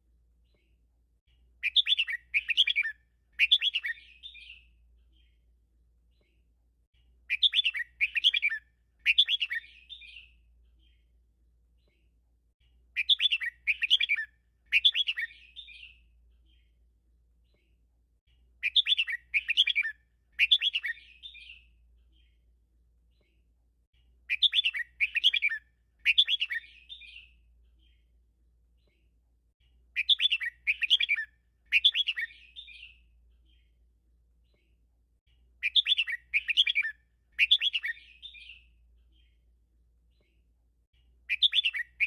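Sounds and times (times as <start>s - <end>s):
bird singing: 1.6s - 5.4s, 7.3s - 11.1s, 13.0s - 16.8s, 18.6s - 22.4s, 24.3s - 28.2s, 29.9s - 33.8s, 35.6s - 39.4s, 41.2s - 42.0s.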